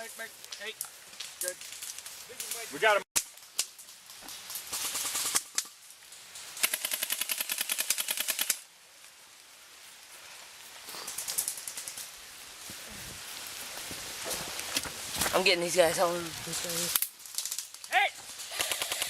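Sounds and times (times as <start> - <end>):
airsoft guns firing bursts: 4.7 - 5.5, 6.6 - 8.6, 18.5 - 19.0.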